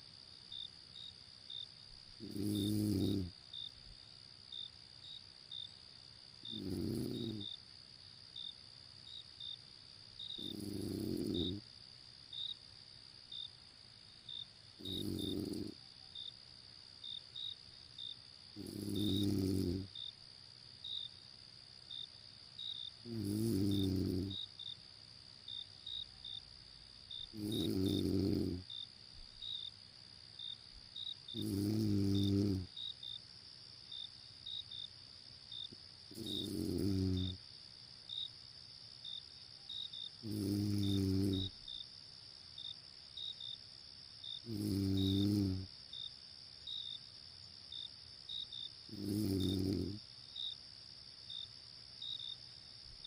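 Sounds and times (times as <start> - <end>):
crickets chirping: 0.0 - 53.0
person snoring: 2.2 - 3.3, 6.5 - 7.4, 10.4 - 11.6, 14.8 - 15.8, 18.6 - 19.9, 23.1 - 24.4, 27.3 - 28.6, 31.4 - 32.7, 36.1 - 37.4, 40.2 - 41.5, 44.4 - 45.7, 48.9 - 50.0.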